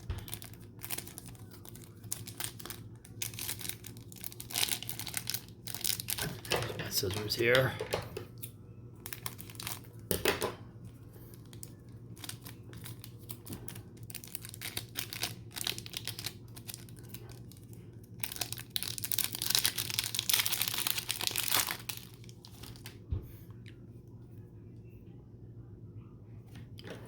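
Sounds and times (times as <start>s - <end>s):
packaging crinkling and tearing: 0.0s - 7.7s, 9.0s - 10.2s, 11.3s - 23.0s.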